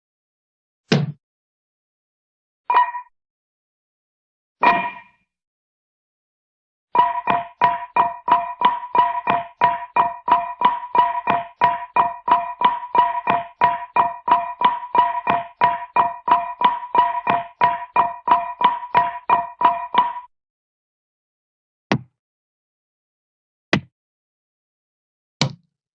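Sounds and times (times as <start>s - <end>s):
repeated struck cartoon tone: 2.7s - 3.1s, 4.6s - 5.2s, 7.0s - 20.3s.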